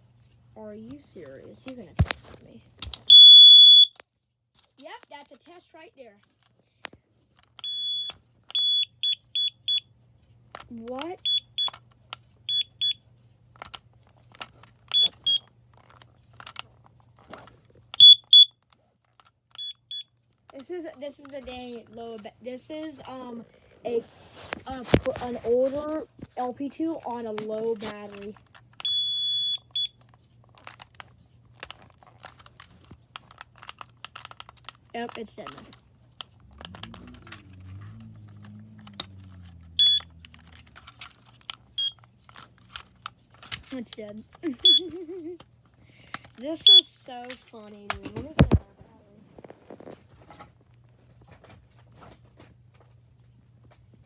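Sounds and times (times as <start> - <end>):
smoke alarm beeps: 3.1 - 4.0, 7.6 - 9.9, 11.2 - 11.8, 12.5 - 13.0, 14.9 - 15.5, 18.0 - 18.5, 19.6 - 20.1, 28.8 - 30.0, 39.8 - 40.1, 41.8 - 42.0, 44.6 - 44.9, 46.6 - 46.9
sharp clicks: 33.2 - 45.0.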